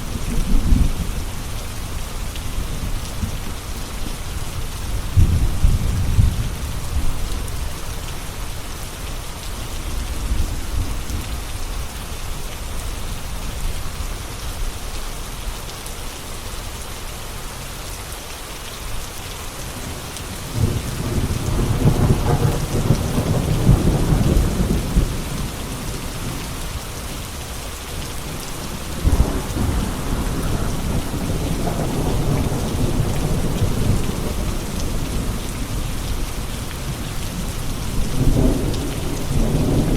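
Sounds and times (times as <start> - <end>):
steady rain: 0.0 - 39.9
thunder rumbling: 5.0 - 7.8, 19.7 - 27.2, 28.2 - 39.9.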